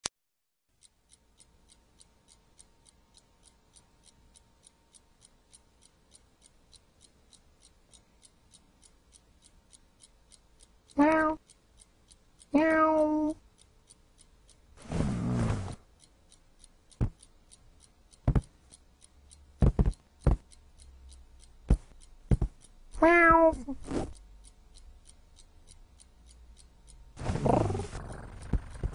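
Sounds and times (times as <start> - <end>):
faint steady ticking: 0.7 - 28.9
cat meowing: 11.0 - 11.4, 12.6 - 13.4, 23.0 - 23.8
knocks: 18.3 - 18.5, 19.6 - 20.4.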